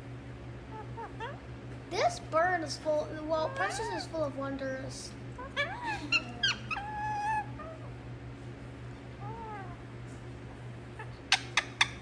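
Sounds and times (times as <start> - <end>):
parrot calling: 0.6 - 1.5, 3.1 - 4.2, 5.3 - 8.0, 9.1 - 9.9, 10.9 - 12.0.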